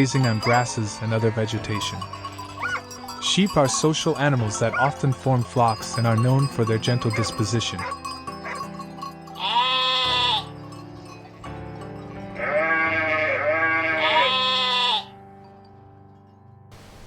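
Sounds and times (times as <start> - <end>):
sheep bleating: 0.0 - 5.0, 9.3 - 10.6, 12.3 - 15.2
background music: 0.0 - 17.0.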